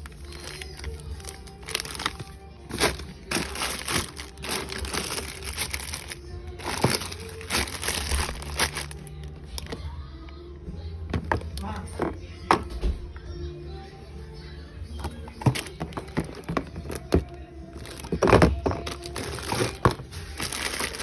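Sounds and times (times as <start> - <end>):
items knocking and clicking: 0.0 - 9.0, 11.1 - 13.2, 15.0 - 21.0
plastic packaging crinkling: 0.0 - 9.8, 15.0 - 21.0
background music: 0.0 - 21.0.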